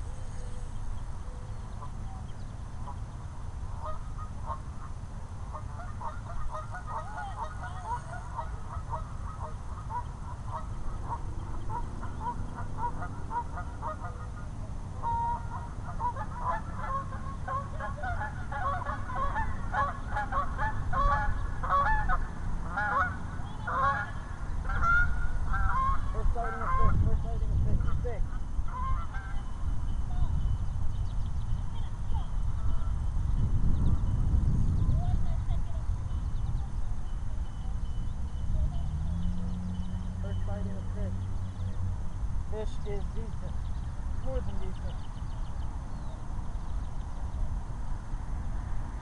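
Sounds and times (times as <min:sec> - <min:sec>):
geese honking: 0:03.7 - 0:30.4.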